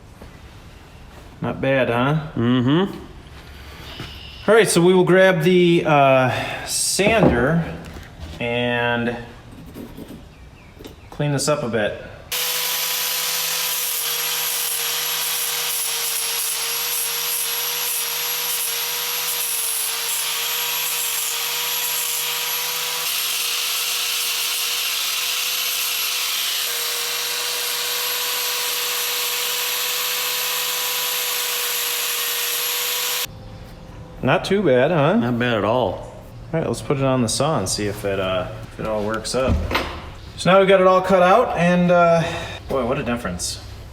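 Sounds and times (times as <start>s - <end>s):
power sander grinding steel: 12.3s - 33.3s.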